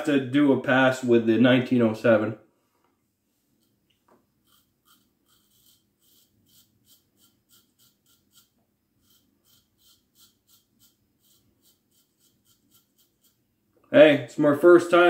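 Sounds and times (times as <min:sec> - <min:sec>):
razor scraping stubble: 0:04.4 - 0:13.5.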